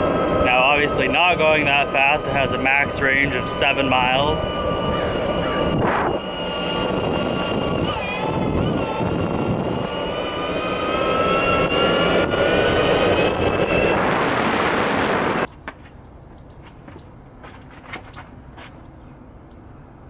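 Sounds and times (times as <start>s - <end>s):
electric motor whine: 0.0s - 15.5s
skateboard wheels rumbling: 0.0s - 15.5s
wind: 0.0s - 20.0s.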